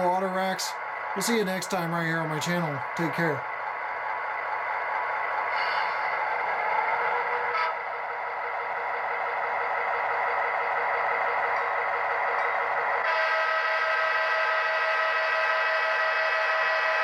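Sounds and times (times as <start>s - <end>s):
model diesel locomotive engine: 0.0s - 17.0s
locomotive horn: 5.5s - 6.2s, 7.0s - 8.0s, 13.0s - 17.0s.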